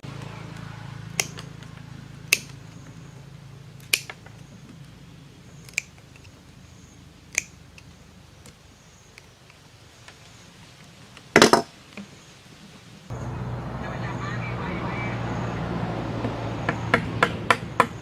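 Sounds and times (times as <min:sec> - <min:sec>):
sharp clicks: 0:03.8 - 0:04.4, 0:05.6 - 0:06.4.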